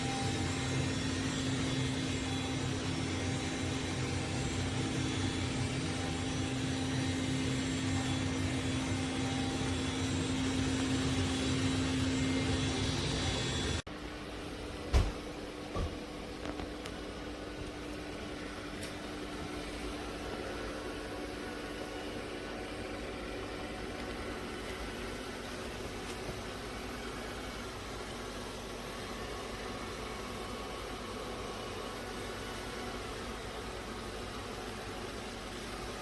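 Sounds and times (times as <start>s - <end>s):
robot vacuum whirring hum: 0.0s - 13.8s.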